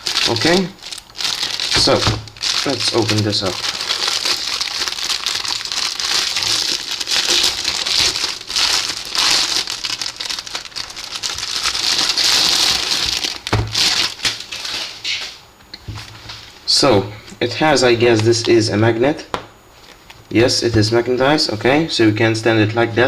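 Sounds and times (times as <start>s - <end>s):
packaging crinkling and rustling: 0.0s - 16.6s.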